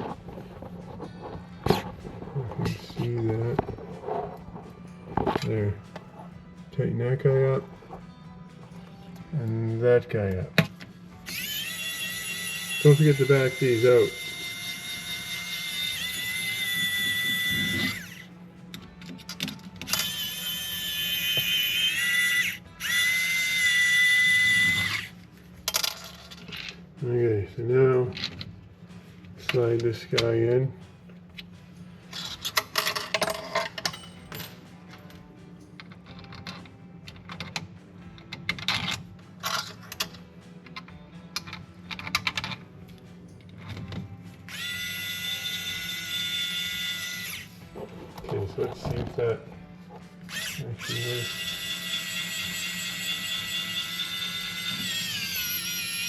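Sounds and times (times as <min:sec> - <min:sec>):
electric screwdriver whining: 0:11.2 - 0:25.2, 0:43.7 - 0:47.7, 0:50.2 - 0:56.0.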